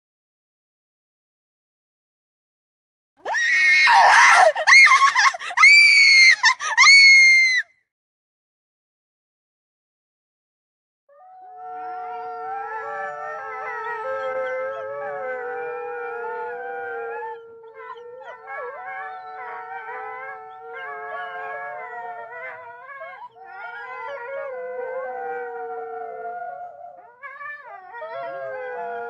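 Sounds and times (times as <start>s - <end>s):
eerie layered howls: 11.4s - 29.0s.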